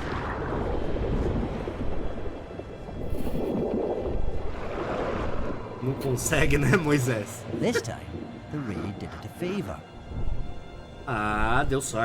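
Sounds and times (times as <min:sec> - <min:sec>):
rushing water churning: 0:00.0 - 0:09.0.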